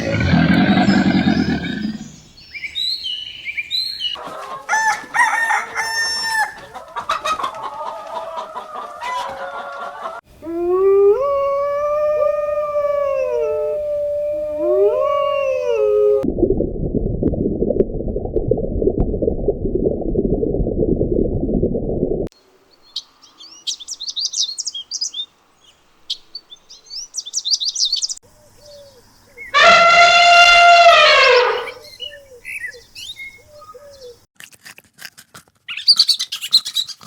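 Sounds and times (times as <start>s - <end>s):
deep roar: 0.0s - 2.2s
hens cackling: 4.2s - 10.2s
rooster crowing: 4.7s - 6.6s, 29.6s - 31.8s.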